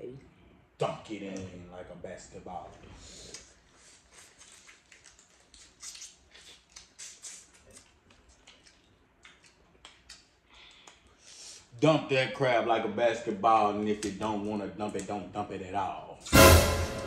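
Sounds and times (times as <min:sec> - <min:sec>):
seafood chewing and smacking: 0:03.3 - 0:11.4.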